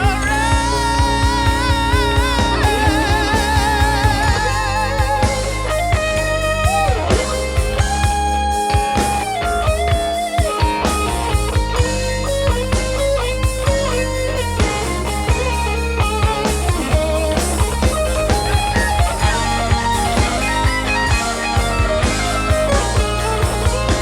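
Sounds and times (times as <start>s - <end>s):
band with drums and bass: 0.0s - 24.0s
lead guitar with bends and slides: 0.0s - 24.0s.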